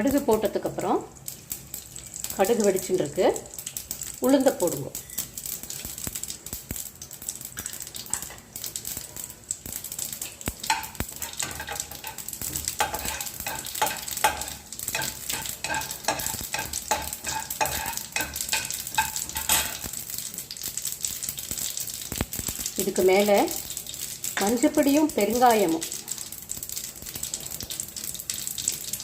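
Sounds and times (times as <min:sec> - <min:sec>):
seeds sizzling in hot oil: 0:00.0 - 0:29.0
stirring against pan: 0:07.6 - 0:20.7.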